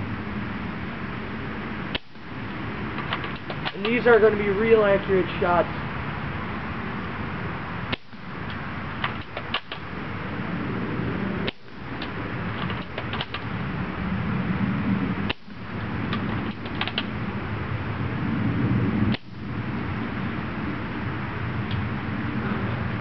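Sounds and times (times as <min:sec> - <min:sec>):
background noise: 0:00.0 - 0:23.0
airsoft rifle bolt clicks: 0:09.0 - 0:09.8.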